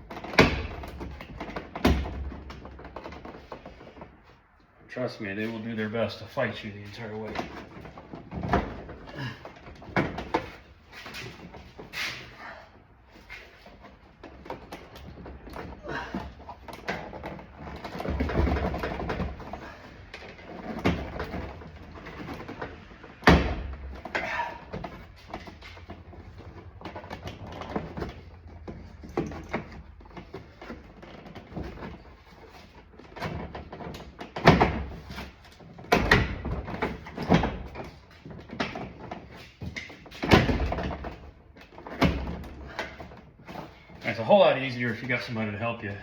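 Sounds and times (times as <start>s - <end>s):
plastic door panel parts rattling: 13.4s - 44.0s.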